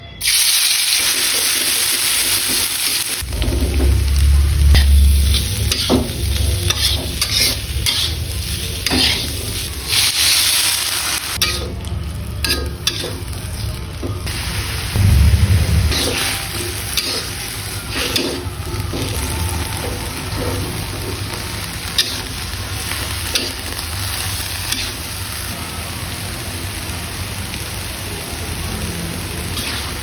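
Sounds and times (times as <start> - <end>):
food sizzling in frying pan: 0.2 - 30.0
low rumble: 3.2 - 7.2, 14.2 - 17.9.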